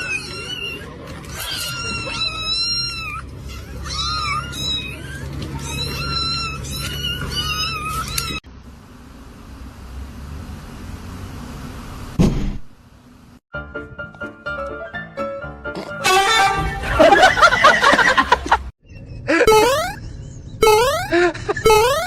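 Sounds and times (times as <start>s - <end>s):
cat meowing: 0.0s - 8.4s.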